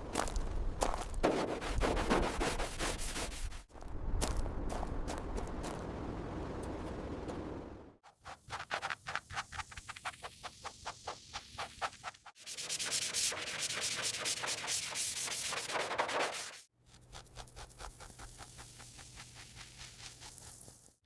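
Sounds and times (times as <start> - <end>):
sanding a surface: 1.2 - 3.7, 11.8 - 21.0.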